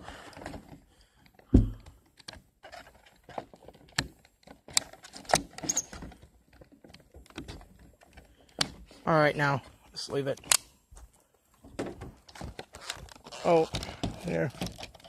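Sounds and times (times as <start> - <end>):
dull thump: 1.5 - 1.9
boxes and packaging handled: 11.0 - 15.0.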